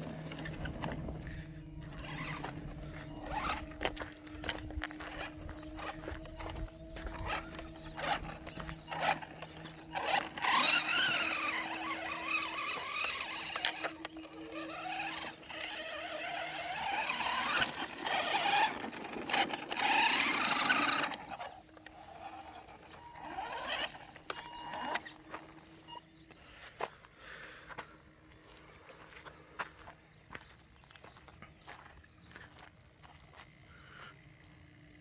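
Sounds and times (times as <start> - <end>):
electric toy car motor whining: 0.0 - 26.4.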